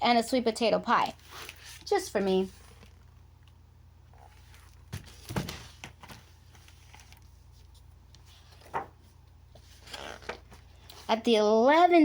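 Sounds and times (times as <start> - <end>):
book pages rustling: 1.2 - 3.2, 4.1 - 11.2.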